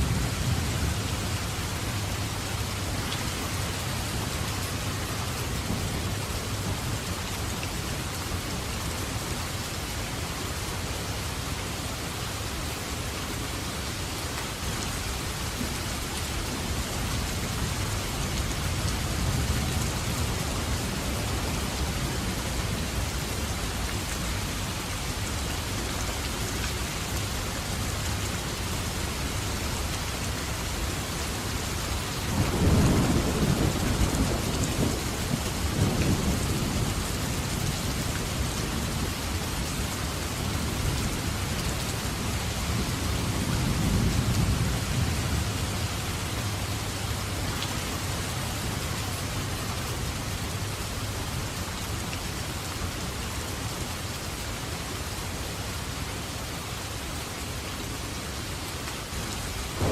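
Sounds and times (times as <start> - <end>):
heavy rain falling: 0.0 - 59.9
thunder rumbling: 32.3 - 37.3, 59.7 - 59.9.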